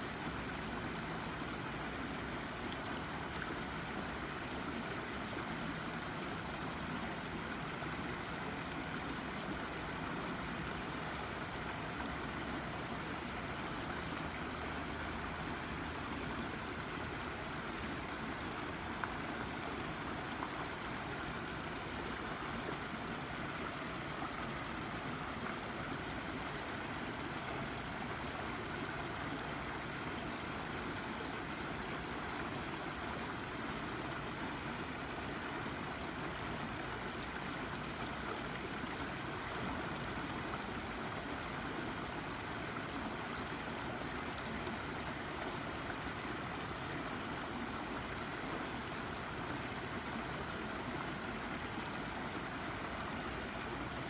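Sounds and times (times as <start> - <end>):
brook babbling over rock: 0.0 - 54.0.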